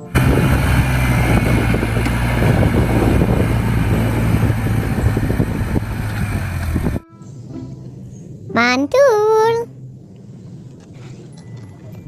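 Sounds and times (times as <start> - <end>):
bulldozer engine clattering: 0.0 - 7.0.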